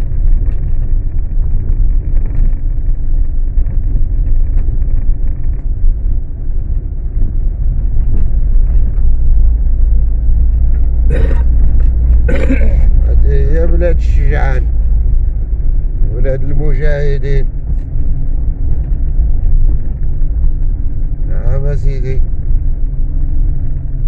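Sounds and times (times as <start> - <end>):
loud low rumble: 0.0 - 24.0.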